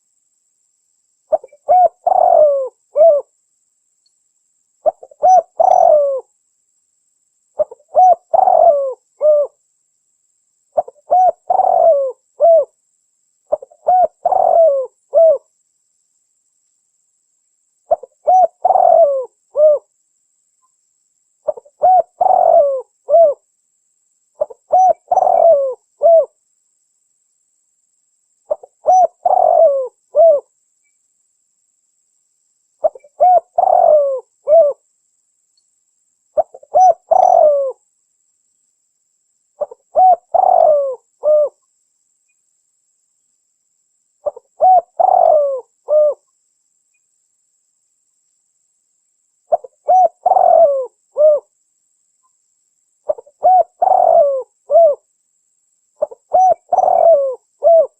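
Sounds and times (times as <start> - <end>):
dove cooing: 1.3 - 3.3, 4.8 - 6.3, 7.6 - 9.6, 10.8 - 12.8, 13.5 - 15.5, 17.9 - 19.9, 21.4 - 23.4, 24.4 - 26.4, 28.5 - 30.5, 32.8 - 34.8, 36.4 - 37.8, 39.6 - 41.6, 44.2 - 46.2, 49.5 - 51.5, 53.1 - 55.0, 56.0 - 57.9.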